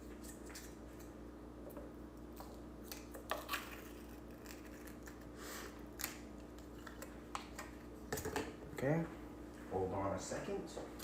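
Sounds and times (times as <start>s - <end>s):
faint steady hum: 0.0s - 11.0s.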